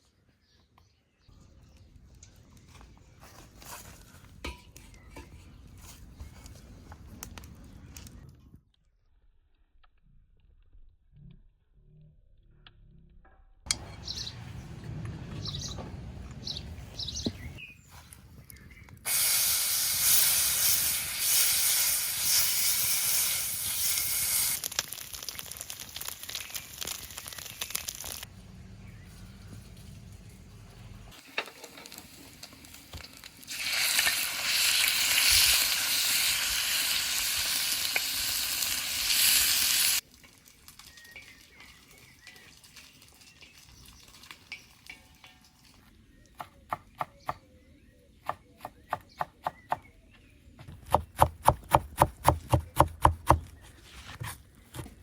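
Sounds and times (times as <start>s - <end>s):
food sizzling in a pan: 19.1s - 28.3s, 31.2s - 45.3s.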